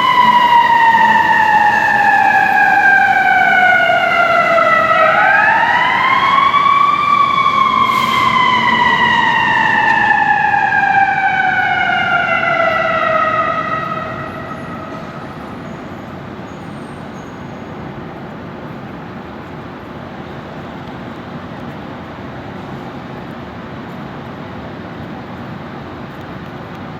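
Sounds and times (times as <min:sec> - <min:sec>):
fire engine siren: 0:00.0 - 0:18.7.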